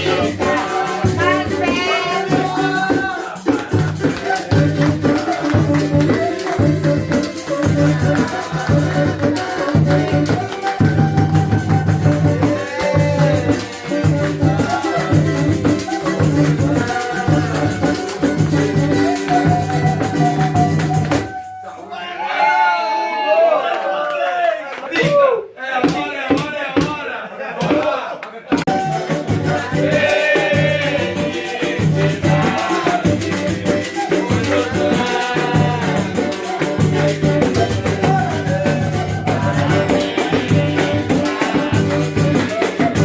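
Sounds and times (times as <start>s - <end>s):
shaker rattling: 0.0s - 11.2s, 28.8s - 43.0s
cuica in samba rhythm: 0.0s - 22.8s, 24.9s - 43.0s.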